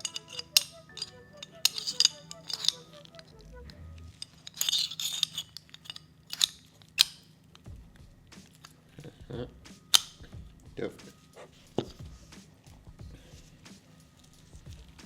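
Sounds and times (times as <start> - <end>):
pistol parts clicking: 0.0 - 3.4, 4.0 - 7.7, 9.8 - 10.4
parts rattling: 0.0 - 7.7, 9.8 - 12.6
soft background music: 0.0 - 15.0.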